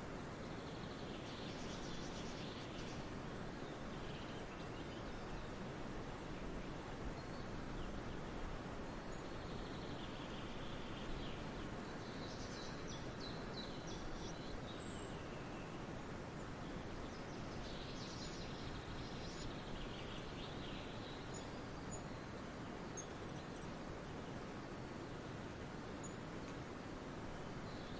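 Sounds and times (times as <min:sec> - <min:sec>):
steady background hiss: 0:00.0 - 0:27.9.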